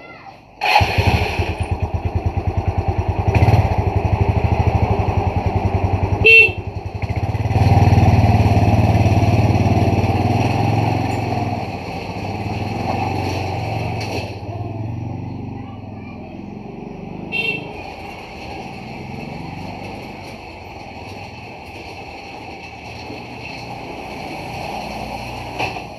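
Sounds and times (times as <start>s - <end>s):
motorcycle engine idling: 0.6s - 24.1s
short horn beep: 17.3s - 17.8s.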